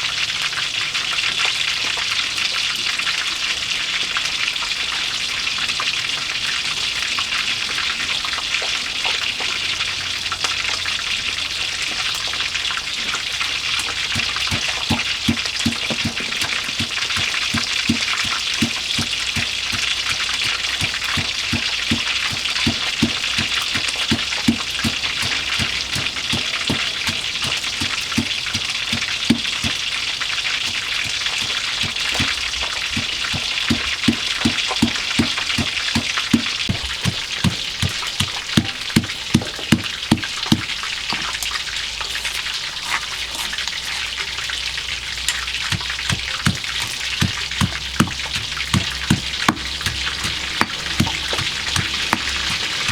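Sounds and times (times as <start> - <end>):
fish sizzling in hot oil: 0.0 - 52.9
oil popping: 11.7 - 52.9.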